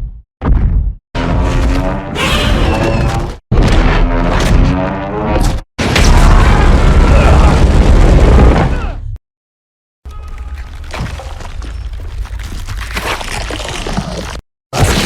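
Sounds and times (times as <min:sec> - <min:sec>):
monster roars: 0:06.2 - 0:09.0.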